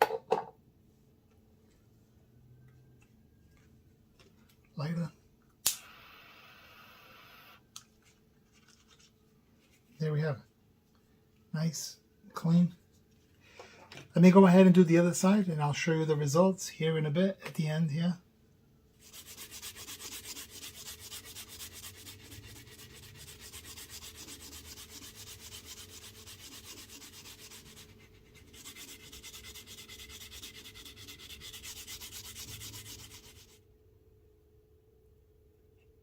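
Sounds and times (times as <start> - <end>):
rubbing strokes on leather: 19.0 - 33.6.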